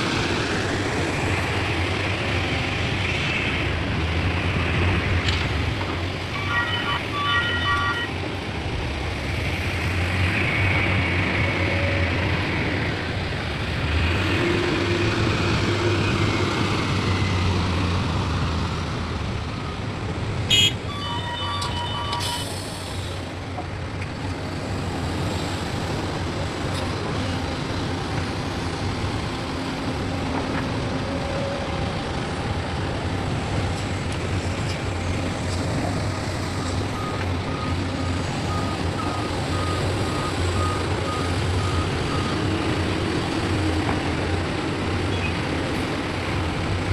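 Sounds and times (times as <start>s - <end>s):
heavy diesel machinery running: 0.0s - 46.9s
reversing beeps: 20.9s - 22.8s, 36.6s - 42.5s.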